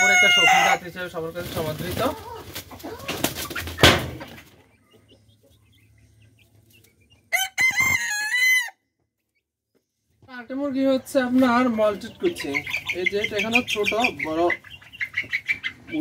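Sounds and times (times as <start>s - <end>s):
rooster crowing: 0.0s - 0.9s, 7.3s - 8.8s
sharp knock: 3.8s - 4.3s.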